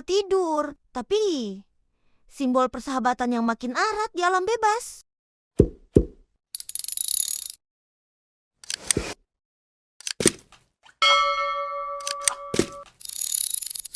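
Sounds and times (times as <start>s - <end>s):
bell-like ring: 11.0s - 12.9s.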